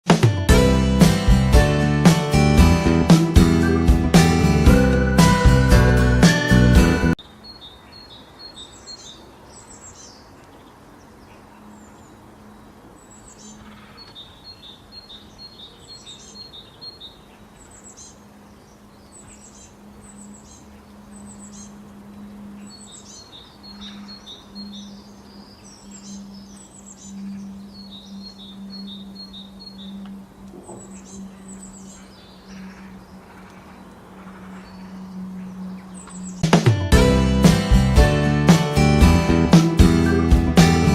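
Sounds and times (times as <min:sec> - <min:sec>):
linnet twittering and trilling: 0:13.0 - 0:36.6.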